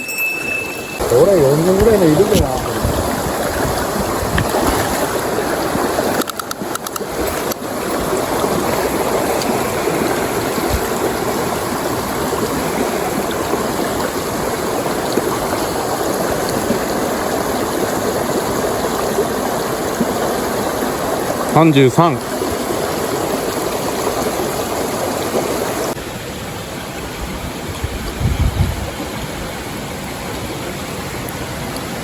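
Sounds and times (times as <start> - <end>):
stream water rushing over rocks: 0.0 - 28.3, 28.9 - 32.0.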